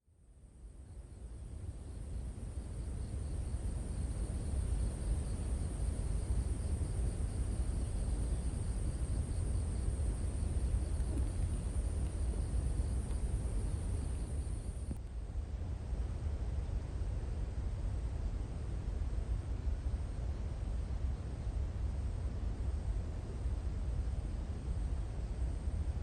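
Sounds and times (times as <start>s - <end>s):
pulsing insect chirp: 0.3s - 15.0s
low rumble: 1.5s - 17.4s.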